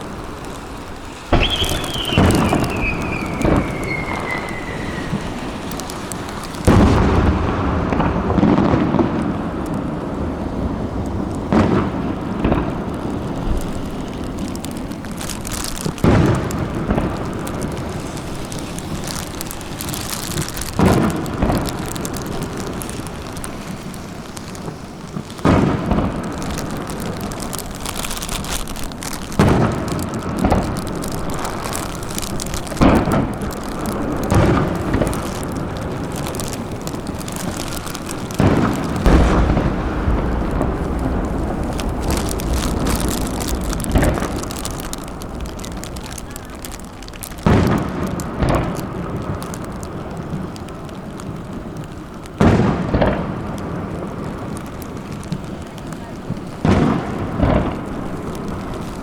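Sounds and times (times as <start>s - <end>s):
firework shells bursting: 0.0s - 50.7s, 56.3s - 59.0s
fireworks rumbling and crackling: 0.0s - 59.0s
firework falling whistle: 1.2s - 8.9s.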